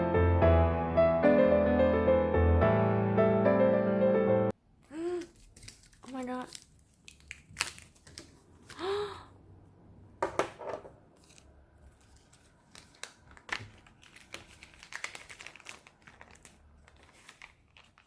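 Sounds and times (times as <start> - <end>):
packaging crinkling and rustling: 5.1 - 8.8, 11.2 - 18.0.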